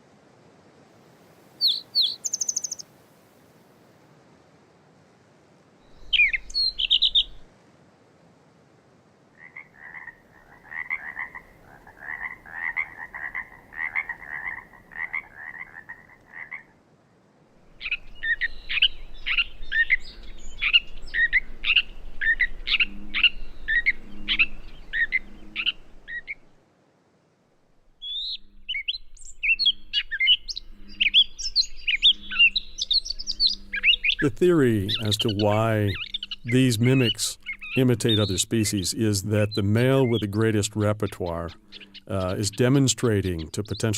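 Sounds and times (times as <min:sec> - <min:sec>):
catbird singing: 0:01.6 - 0:02.9, 0:05.9 - 0:07.5, 0:17.7 - 0:26.5, 0:28.0 - 0:43.9.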